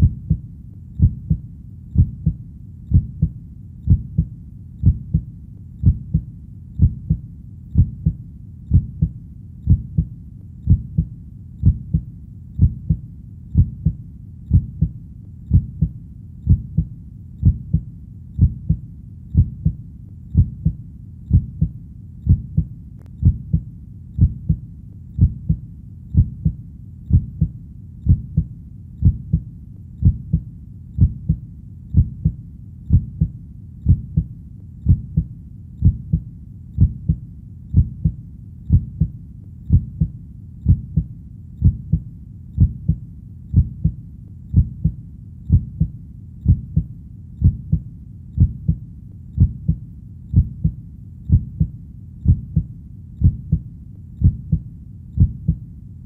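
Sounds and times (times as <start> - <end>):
heartbeat thumps: 0.0 - 55.7
faint low hum: 0.0 - 56.0.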